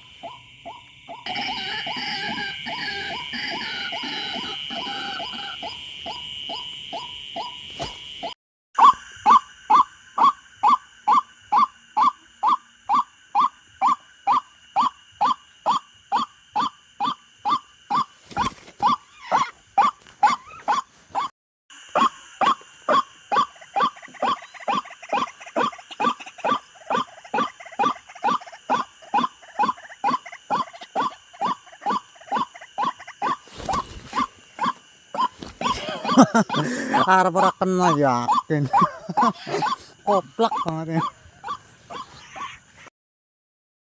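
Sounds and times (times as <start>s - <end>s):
bird calling harsh falling notes: 0.0s - 8.0s, 33.4s - 42.5s.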